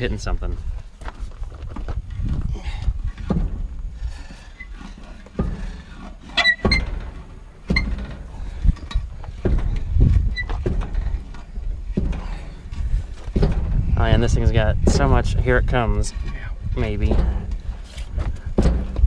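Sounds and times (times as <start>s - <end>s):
tire scraping and shifting: 0.0s - 19.0s
knocks: 3.2s - 3.8s, 5.2s - 15.4s, 18.6s - 19.0s.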